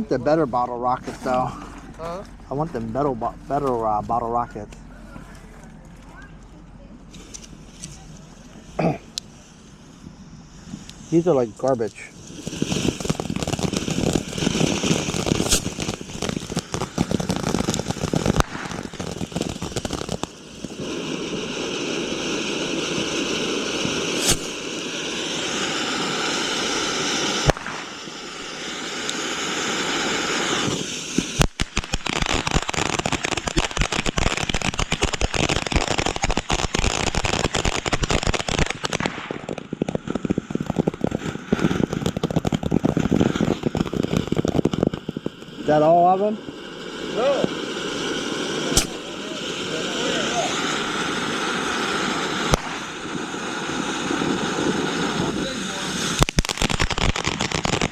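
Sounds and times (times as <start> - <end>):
fireworks hissing spray: 0.0 - 5.6, 7.0 - 57.9
fireworks crackling pops: 0.0 - 57.9.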